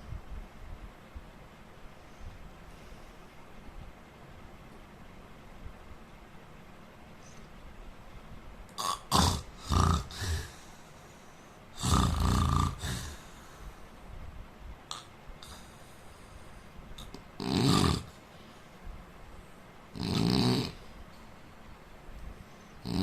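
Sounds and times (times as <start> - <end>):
man snoring: 8.8 - 10.9, 11.7 - 13.5, 17.0 - 18.2, 19.9 - 20.9, 22.8 - 23.0
short snorts: 8.8 - 11.1, 11.7 - 13.7, 17.0 - 18.2, 19.9 - 20.9, 22.8 - 23.0.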